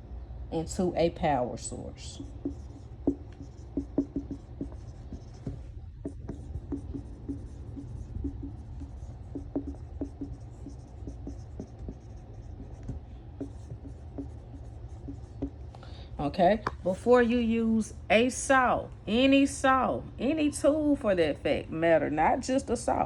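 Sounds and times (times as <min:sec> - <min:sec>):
low steady hum: 0:00.0 - 0:23.0
pen scratching: 0:02.0 - 0:15.6
pen tapping: 0:02.2 - 0:15.6.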